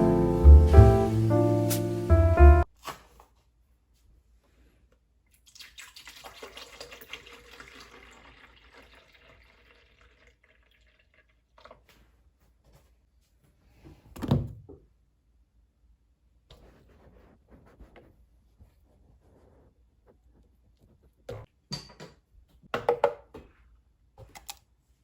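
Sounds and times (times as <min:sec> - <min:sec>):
water running from tap: 0:05.5 - 0:11.6.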